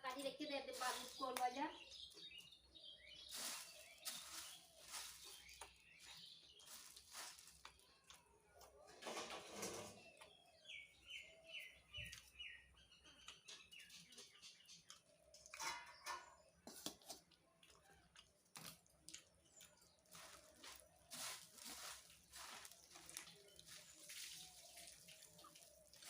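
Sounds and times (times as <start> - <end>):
small bird chirping: 0.1 - 17.9
person eating crunchy food: 16.8 - 23.8.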